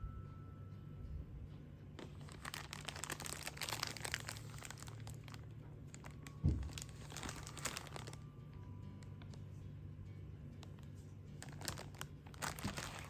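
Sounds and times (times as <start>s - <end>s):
dull thump: 6.4s - 6.8s.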